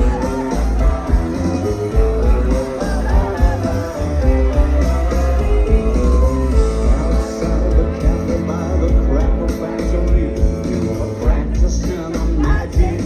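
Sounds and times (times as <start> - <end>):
electric guitar riff: 0.0 - 9.7
drums: 0.0 - 13.0
heavy bass: 0.0 - 13.0.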